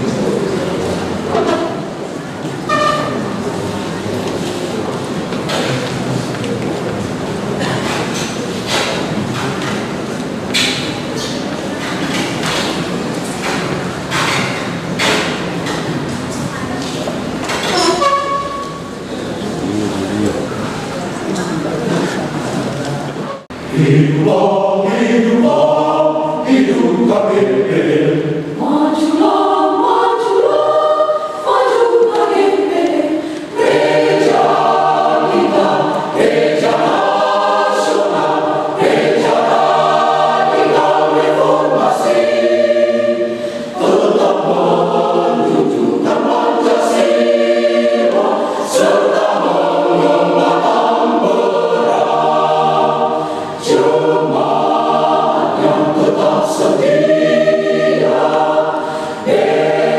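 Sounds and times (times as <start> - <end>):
church choir singing: 0.0 - 6.0, 23.3 - 59.9.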